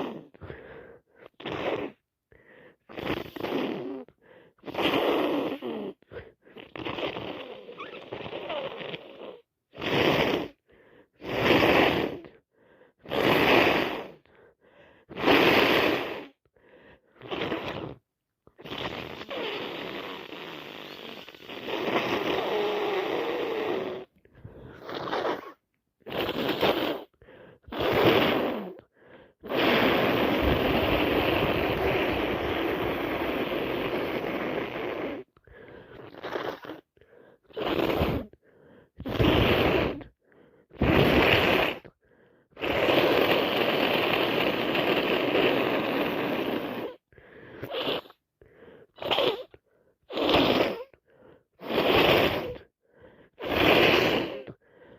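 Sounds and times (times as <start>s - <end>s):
noisy snuffling through nose: 0.0s - 54.9s
short sharp sniffs: 18.6s - 54.9s.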